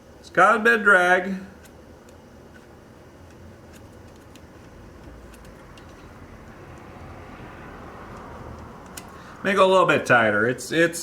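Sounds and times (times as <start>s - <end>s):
road traffic rumble: 5.0s - 10.5s.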